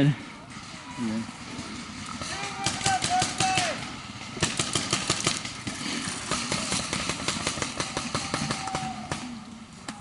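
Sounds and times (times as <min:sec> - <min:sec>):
paintball markers firing: 0:02.2 - 0:10.0.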